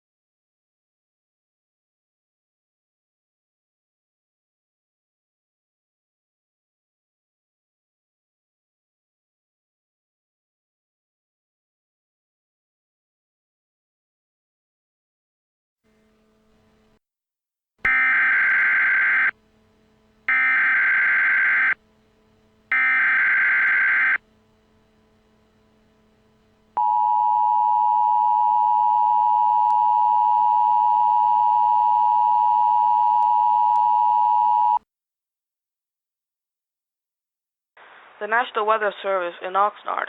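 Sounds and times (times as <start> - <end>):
data burst header tones: 17.9 - 19.4, 20.2 - 21.9, 22.7 - 24.4
two-tone attention signal: 17.9 - 19.4, 20.3 - 21.8, 22.7 - 24.2.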